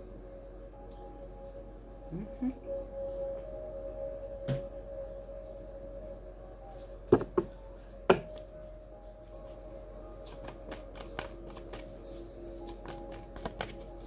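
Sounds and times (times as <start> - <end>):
soft background music: 0.0 - 14.0
cards snapping and shuffling: 10.2 - 14.0.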